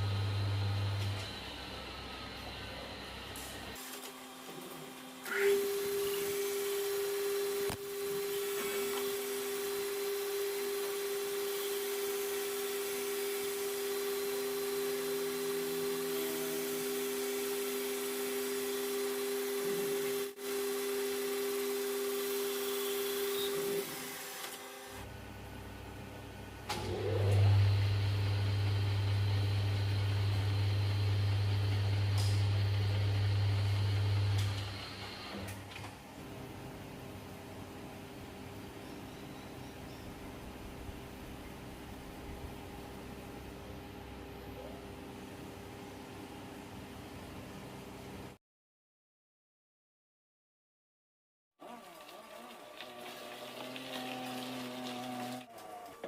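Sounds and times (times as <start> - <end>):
machine deep hum: 0.0 - 3.8
machine tone with hiss: 38.7 - 40.3.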